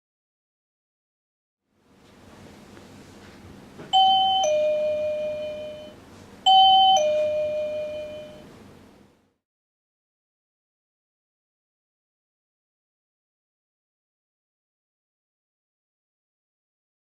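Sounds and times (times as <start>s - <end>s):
two-tone ding-dong chime: 4.0s - 8.5s.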